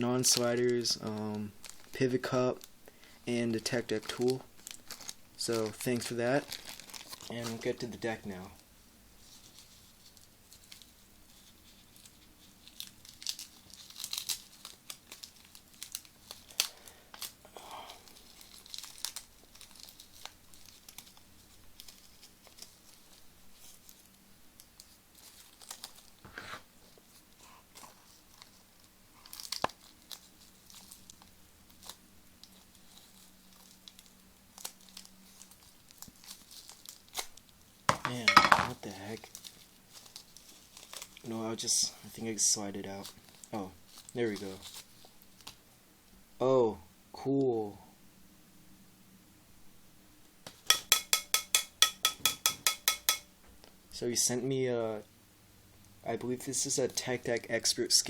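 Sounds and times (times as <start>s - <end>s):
packaging tearing and rustling: 0.2s - 2.8s, 3.6s - 8.5s, 9.2s - 26.2s, 27.1s - 41.7s, 42.9s - 45.6s.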